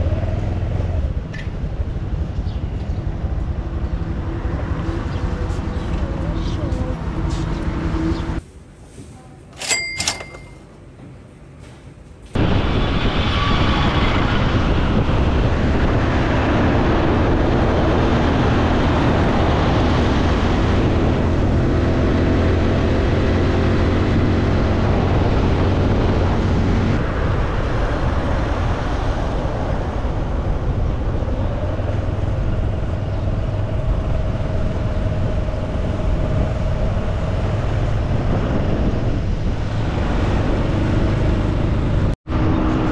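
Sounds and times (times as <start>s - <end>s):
wind noise rushing: 12.4s - 42.9s.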